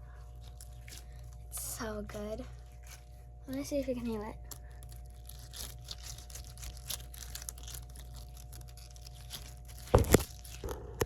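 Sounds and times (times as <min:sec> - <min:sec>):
squishy toy squishing: 0:00.2 - 0:11.0
loud knocks: 0:10.0 - 0:11.0.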